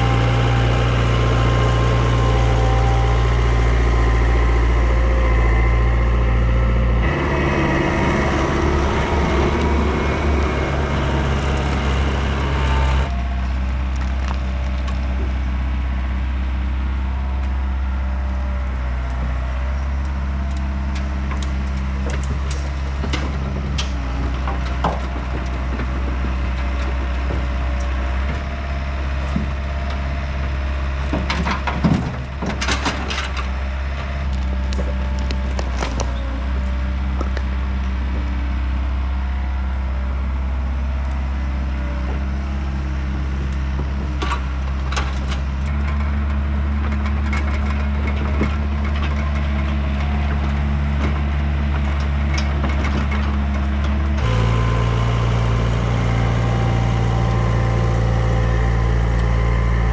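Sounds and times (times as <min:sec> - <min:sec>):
diesel engine running: 0:00.0 - 0:59.9
sharp cracks and crunches: 0:34.2 - 0:36.2.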